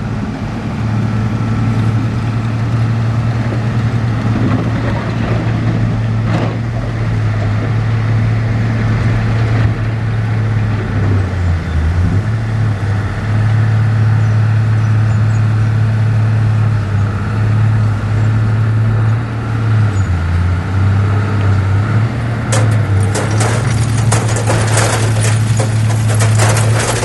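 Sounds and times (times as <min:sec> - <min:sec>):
heavy machinery diesel engine drone: 0:00.0 - 0:27.0
sharp clanking and rattling: 0:22.4 - 0:27.0.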